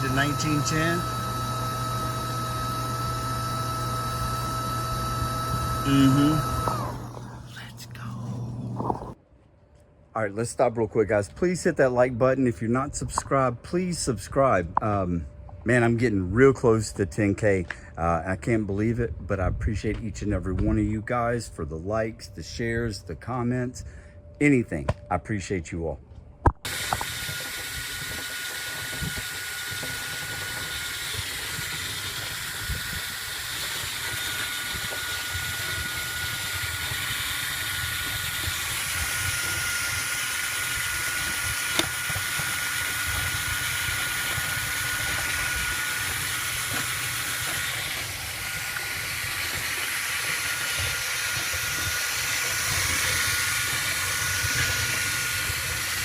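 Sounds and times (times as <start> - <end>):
motor running: 0.0 - 9.2, 26.6 - 56.0
thin steady whine: 0.0 - 56.0.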